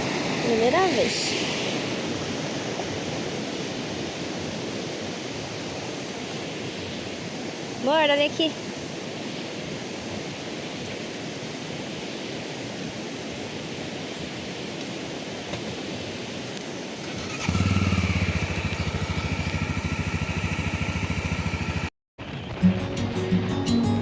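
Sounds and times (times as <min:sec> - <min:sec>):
flowing water: 0:00.0 - 0:21.8
motorcycle engine idling: 0:17.0 - 0:22.4.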